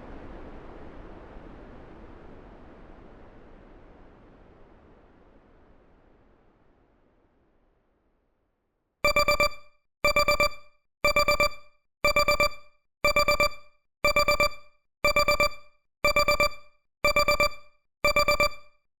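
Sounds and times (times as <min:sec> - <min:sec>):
timer alarm beeping: 0:09.0 - 0:18.8.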